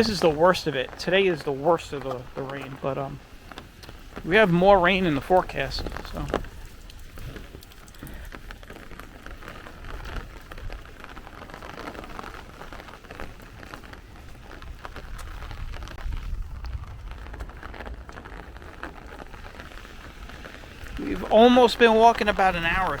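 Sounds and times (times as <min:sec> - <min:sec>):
rain splashing on street: 0:00.0 - 0:23.0
low rumble: 0:14.6 - 0:21.3.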